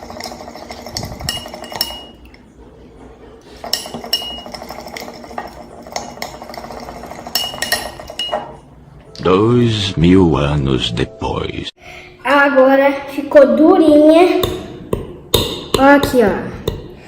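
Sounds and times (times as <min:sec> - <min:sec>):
utensil stirring slime: 0:00.0 - 0:02.3, 0:03.4 - 0:08.6.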